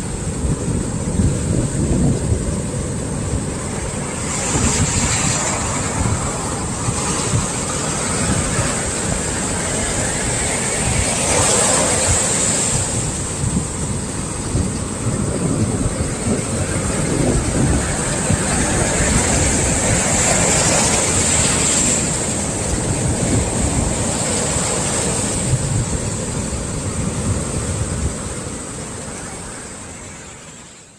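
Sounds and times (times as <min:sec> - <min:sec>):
wind on microphone: 0:00.0 - 0:30.0
ocean waves breaking on shore: 0:00.0 - 0:30.9.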